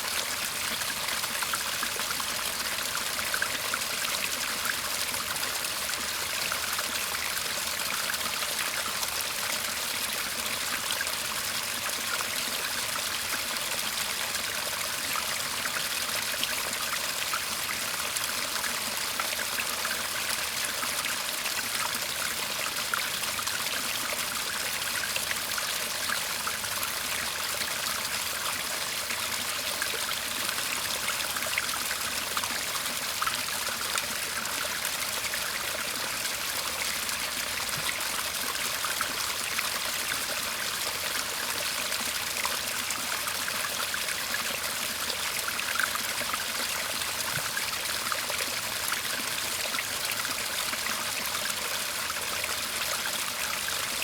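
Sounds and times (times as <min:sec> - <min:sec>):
stream burbling and trickling: 0:00.0 - 0:54.0.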